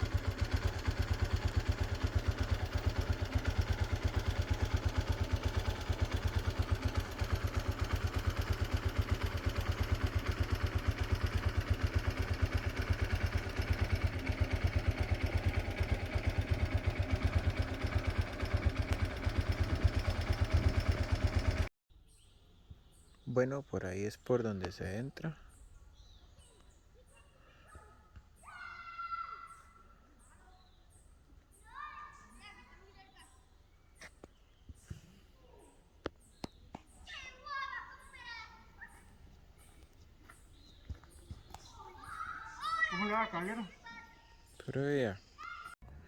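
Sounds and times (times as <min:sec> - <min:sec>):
vehicle engine throbbing: 0:00.0 - 0:21.7.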